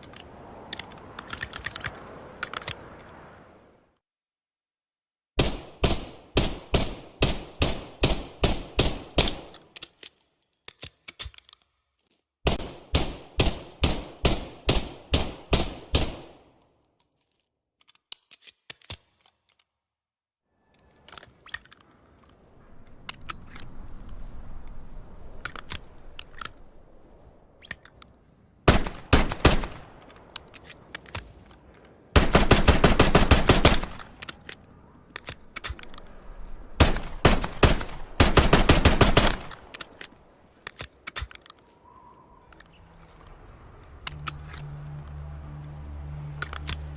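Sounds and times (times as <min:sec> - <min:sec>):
metallic handling clicks: 0:00.0 - 0:03.2, 0:09.2 - 0:12.2, 0:16.6 - 0:19.8, 0:20.6 - 0:23.8, 0:33.8 - 0:36.3, 0:39.2 - 0:41.8, 0:42.5 - 0:45.7, 0:46.3 - 0:46.9
low rumbling noise: 0:22.4 - 0:27.6, 0:41.8 - 0:46.9.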